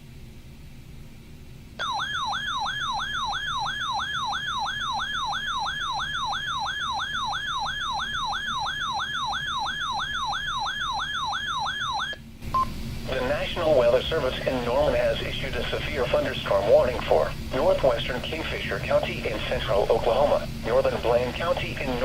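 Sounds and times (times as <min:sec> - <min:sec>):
receiver hiss and hum: 0:00.0 - 0:22.0
electronic warbling alert siren: 0:01.8 - 0:12.2.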